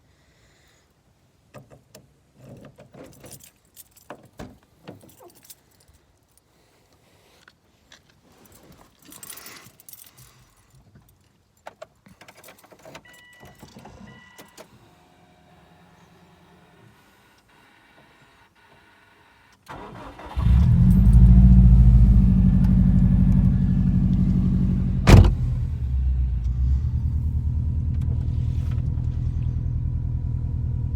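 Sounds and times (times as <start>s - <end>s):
car keys jangling: 3.0s - 6.5s, 8.4s - 14.7s, 19.8s - 25.7s.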